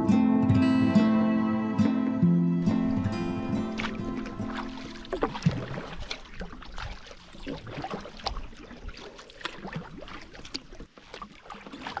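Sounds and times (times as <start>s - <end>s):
paddle splashes and drips: 2.7s - 12.0s.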